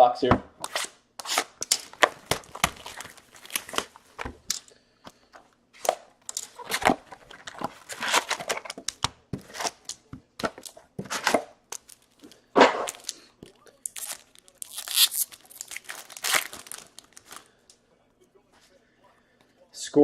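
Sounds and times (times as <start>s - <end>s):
plastic and foil packaging crinkling: 1.2s - 4.7s, 6.2s - 9.9s, 10.5s - 17.6s.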